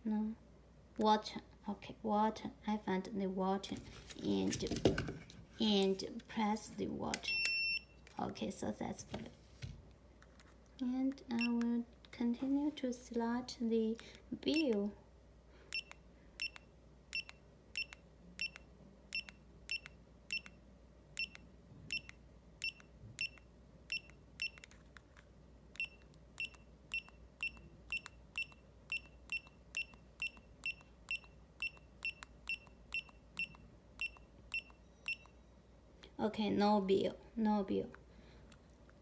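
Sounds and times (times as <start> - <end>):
electronic key beeps: 7.2 - 7.9, 14.5 - 14.8, 15.7 - 20.5, 21.2 - 24.7, 25.8 - 35.4.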